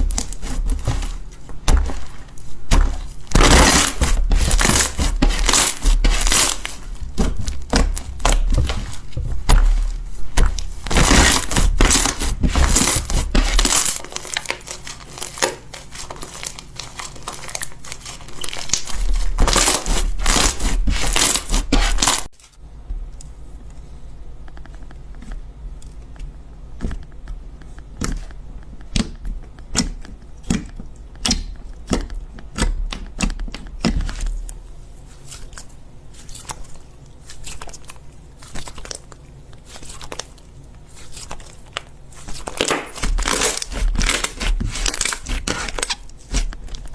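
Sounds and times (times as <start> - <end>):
slime crackling and popping: 0.0 - 22.3, 41.0 - 46.9.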